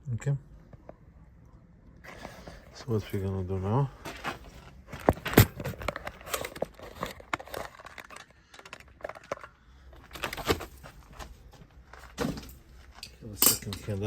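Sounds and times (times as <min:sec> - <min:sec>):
metal parts and tools rattling: 0:04.0 - 0:11.3, 0:11.9 - 0:14.0.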